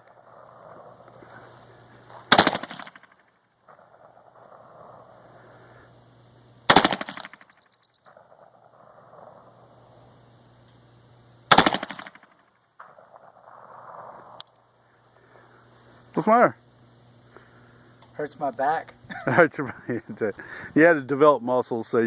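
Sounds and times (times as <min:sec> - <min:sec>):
rifle shots with echo: 0:02.3 - 0:05.2, 0:06.7 - 0:09.8, 0:11.5 - 0:14.4.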